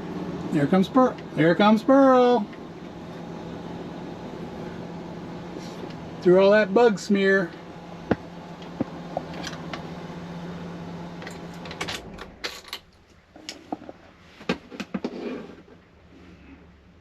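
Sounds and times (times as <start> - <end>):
steady hum: 0.0 - 13.9
sharp clicks and knocks: 8.0 - 9.9.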